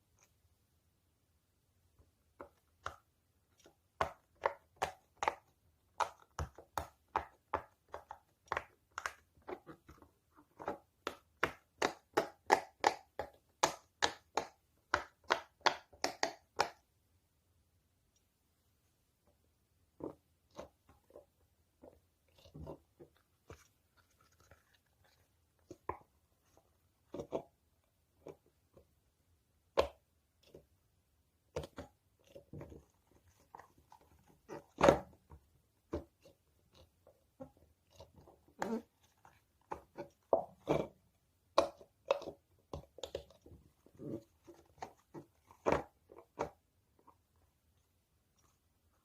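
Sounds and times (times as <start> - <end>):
crinkles and taps: 20.0 - 27.5.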